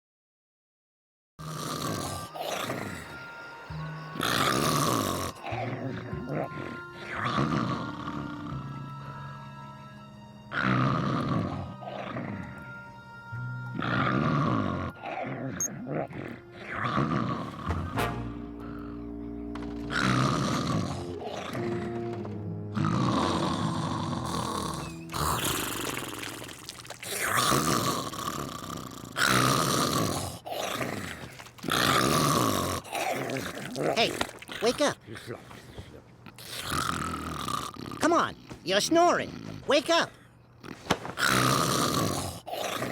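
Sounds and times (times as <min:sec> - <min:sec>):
cartoon duck snoring: 0:01.4 - 0:03.2, 0:04.2 - 0:08.8, 0:10.6 - 0:12.6, 0:13.8 - 0:18.0, 0:19.9 - 0:22.0, 0:22.7 - 0:38.5, 0:39.2 - 0:39.7, 0:40.6 - 0:42.9
background music: 0:01.4 - 0:26.6.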